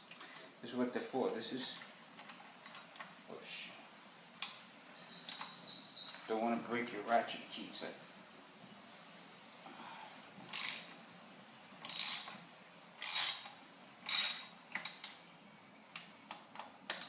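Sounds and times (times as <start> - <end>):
ratchet wrench clicking: 10.5 - 10.9, 11.8 - 12.4, 13.0 - 15.2.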